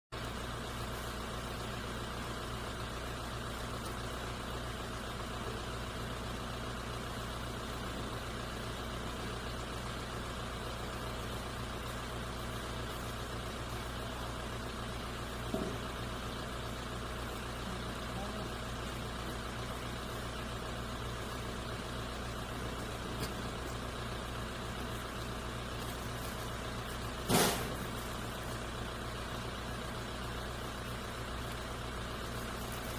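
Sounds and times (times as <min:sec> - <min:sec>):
low mechanical hum: 0:00.2 - 0:32.9.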